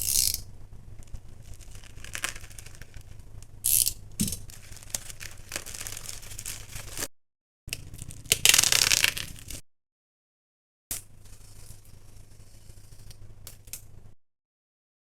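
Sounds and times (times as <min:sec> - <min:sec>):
cardboard and wrapping rustling: 0:04.2 - 0:07.1.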